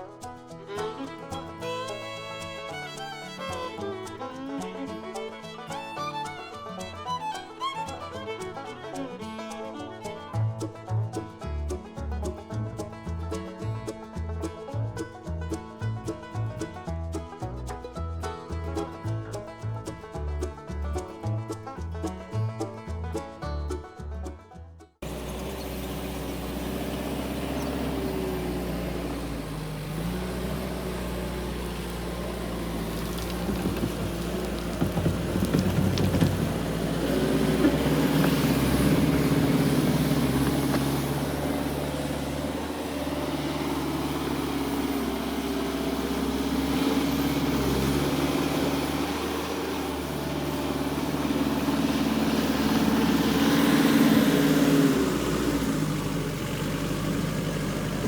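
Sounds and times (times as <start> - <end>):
diesel engine under changing load: 0.0 - 23.4, 25.0 - 58.0
sharp knocks: 33.0 - 39.7.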